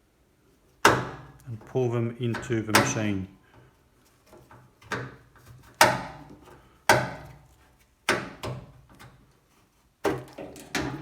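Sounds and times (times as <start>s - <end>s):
hard plastic knocks and clunks: 0.8s - 1.7s, 2.3s - 3.1s, 4.3s - 7.5s, 10.0s - 11.0s.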